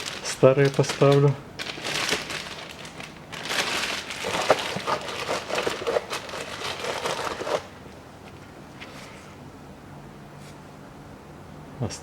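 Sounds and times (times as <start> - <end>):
plastic packaging rustling: 0.0 - 7.7.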